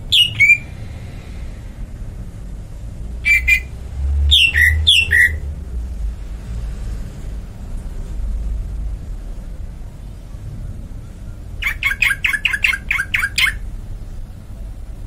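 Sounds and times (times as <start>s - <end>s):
bird squawks: 0.0s - 0.7s, 3.2s - 3.7s, 4.3s - 5.4s, 11.6s - 13.6s
low rumble: 0.0s - 11.7s.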